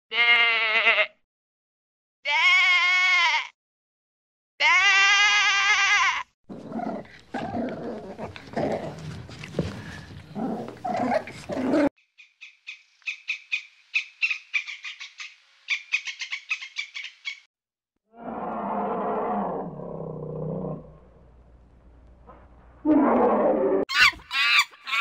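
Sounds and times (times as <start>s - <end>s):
sheep bleating: 0.1s - 1.2s, 2.2s - 3.6s, 4.6s - 6.3s.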